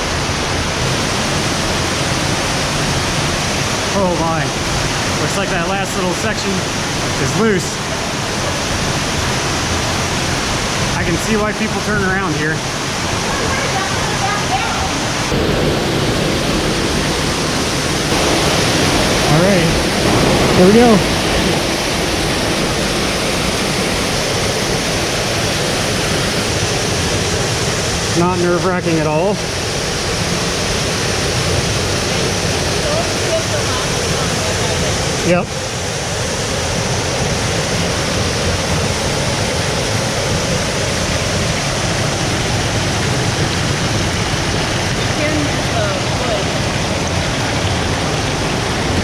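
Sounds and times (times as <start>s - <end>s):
waterfall roaring: 0.0s - 49.0s.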